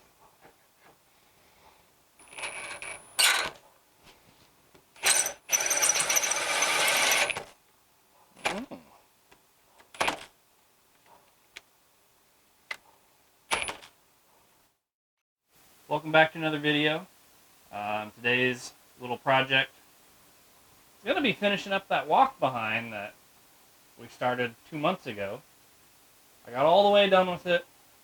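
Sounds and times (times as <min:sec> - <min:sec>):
power drill whining: 0:02.2 - 0:03.6, 0:05.0 - 0:07.5.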